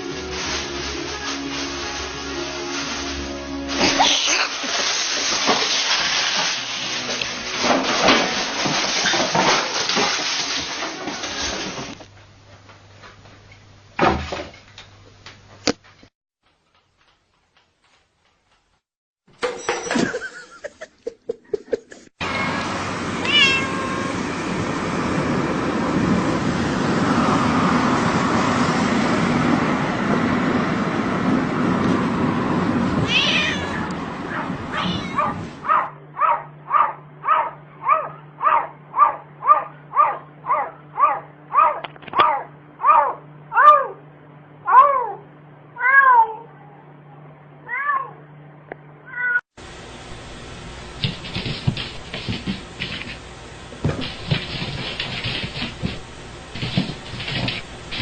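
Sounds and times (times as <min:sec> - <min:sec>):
cat meowing: 0:22.2 - 0:24.2, 0:33.0 - 0:35.4, 0:45.8 - 0:46.6, 0:49.1 - 0:49.4.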